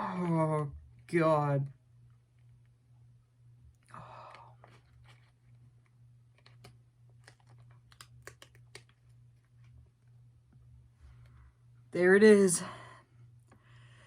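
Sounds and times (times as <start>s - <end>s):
plastic wrapper crinkling: 4.6s - 9.8s.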